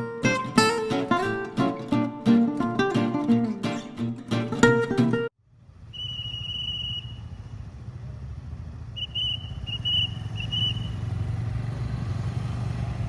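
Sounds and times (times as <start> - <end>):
low rumble of traffic: 5.3 - 13.0
police whistle blasts: 5.8 - 7.6, 8.9 - 11.1.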